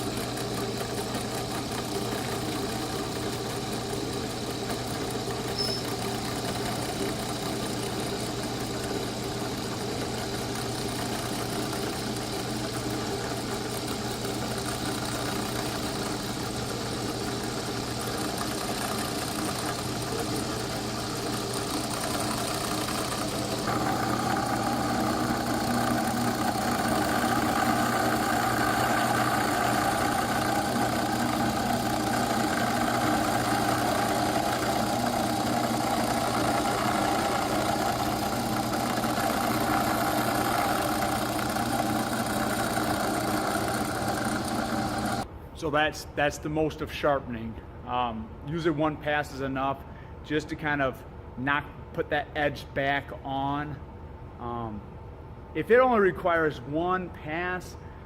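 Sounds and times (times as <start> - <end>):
thickness planer machine hum: 0.0 - 45.3.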